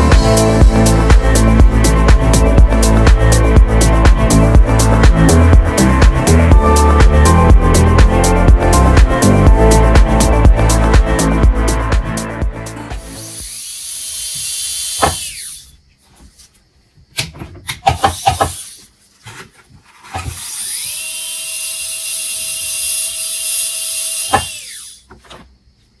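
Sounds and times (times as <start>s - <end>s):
dental handpiece high whine: 12.6s - 15.7s, 20.4s - 25.0s.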